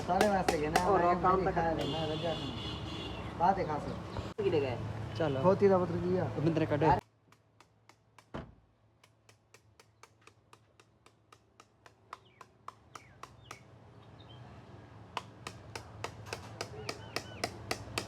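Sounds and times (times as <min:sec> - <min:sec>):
dull thump: 0:08.3 - 0:08.6.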